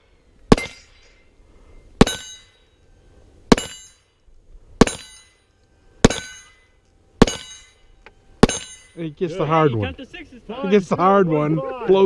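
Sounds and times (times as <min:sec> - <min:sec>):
steel plate ringing: 0:00.5 - 0:01.4, 0:02.0 - 0:09.2.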